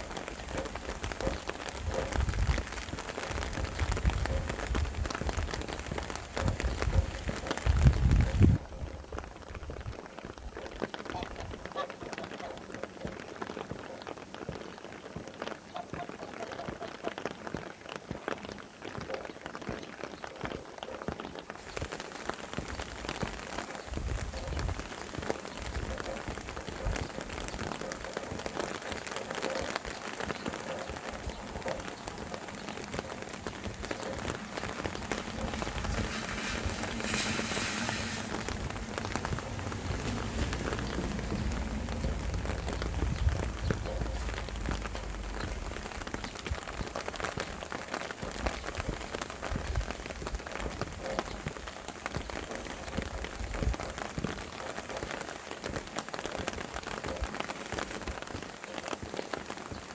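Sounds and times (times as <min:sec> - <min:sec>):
wind gusts rumbling: 0:00.0 - 0:11.6, 0:29.9 - 0:47.6
rain pattering: 0:00.0 - 0:59.9.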